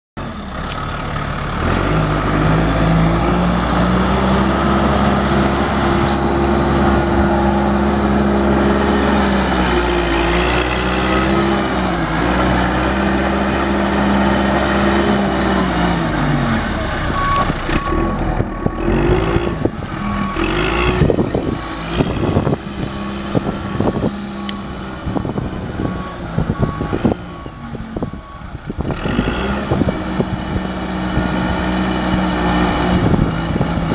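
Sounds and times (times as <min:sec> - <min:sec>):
diesel engine running: 0:00.2 - 0:33.9
backup alarm beeping: 0:16.7 - 0:20.8.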